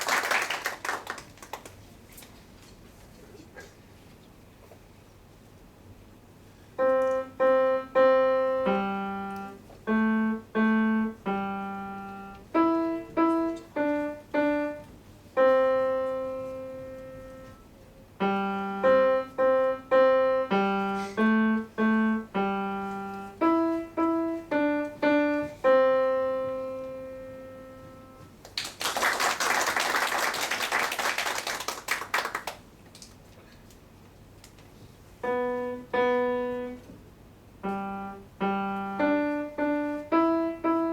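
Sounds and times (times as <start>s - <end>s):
audience applause: 0.0s - 1.8s, 28.5s - 32.6s
piano piece: 6.8s - 28.4s, 35.2s - 40.9s.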